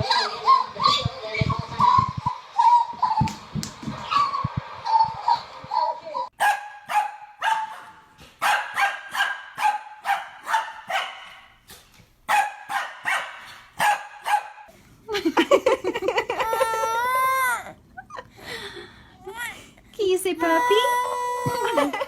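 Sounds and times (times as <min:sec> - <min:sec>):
dog barking: 0:06.4 - 0:11.5, 0:12.3 - 0:14.7.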